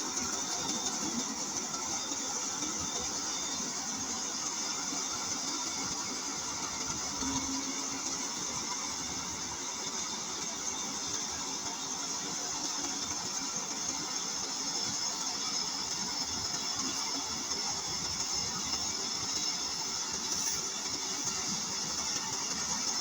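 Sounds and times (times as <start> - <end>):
high-pitched hiss: 16.6 - 23.0.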